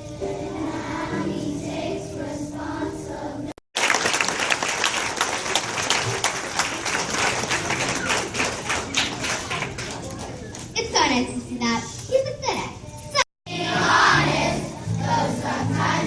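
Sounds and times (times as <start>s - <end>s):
children's choir singing: 0.0s - 3.6s, 13.5s - 16.0s
audience applauding: 3.8s - 10.4s.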